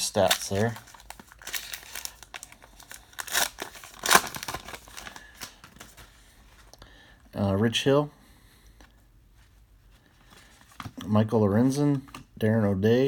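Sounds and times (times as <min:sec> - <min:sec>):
cards rustling and sliding: 0:00.0 - 0:06.7.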